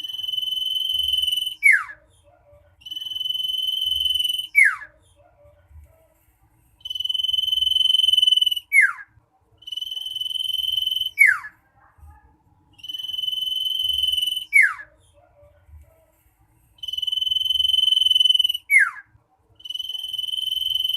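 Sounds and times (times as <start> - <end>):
bird whistling song: 0.0 - 2.0, 2.8 - 4.9, 6.8 - 11.6, 12.8 - 14.9, 16.8 - 19.0, 19.6 - 20.9.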